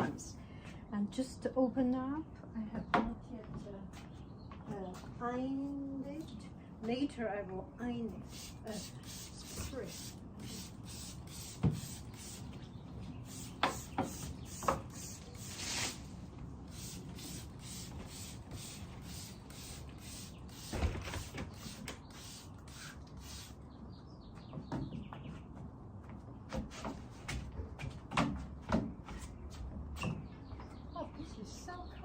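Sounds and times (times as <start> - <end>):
spray bottle squirting: 8.2 - 12.5, 13.3 - 16.0, 16.7 - 23.6.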